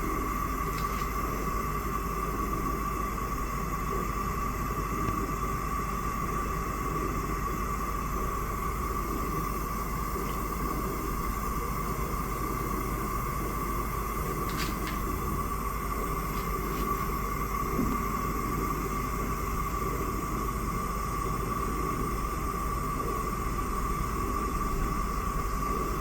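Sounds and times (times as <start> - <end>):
gas burner hissing: 0.0 - 26.0.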